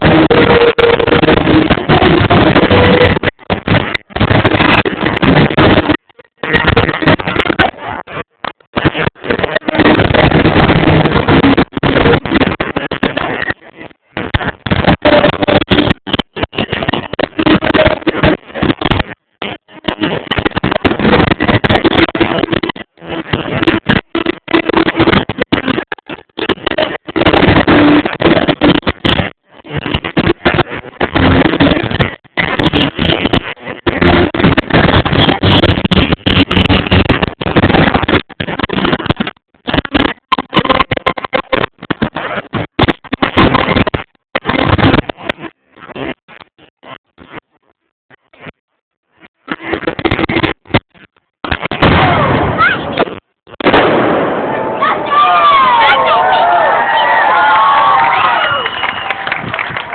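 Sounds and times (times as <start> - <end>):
fireworks barrage: 51.8 - 59.9.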